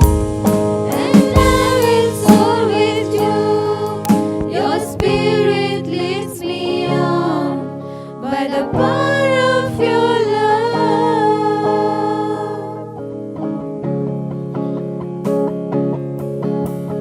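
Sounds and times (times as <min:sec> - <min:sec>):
guitar chords and plucking: 0:00.0 - 0:17.0.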